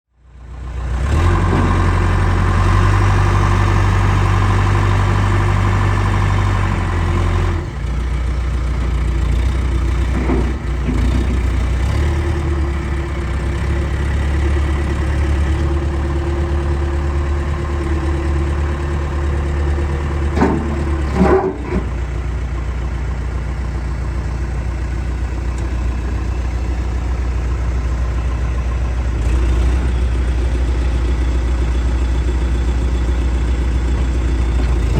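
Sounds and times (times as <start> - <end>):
backhoe diesel engine running: 0.2 - 34.9
short knocks: 20.4 - 21.9.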